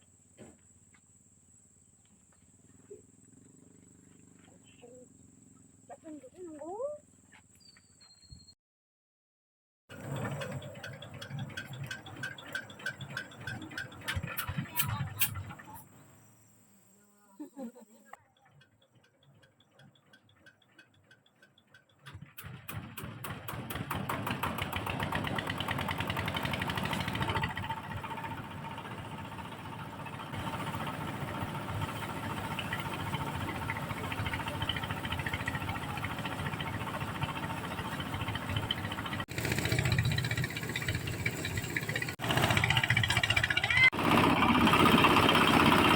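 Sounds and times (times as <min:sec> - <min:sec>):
engine starting and running: 0:09.9 - 0:16.6, 0:18.1 - 0:45.9.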